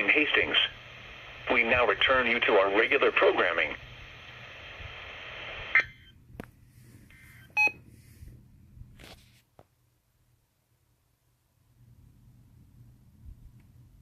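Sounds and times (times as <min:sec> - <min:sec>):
radio static hiss: 0:00.0 - 0:05.9.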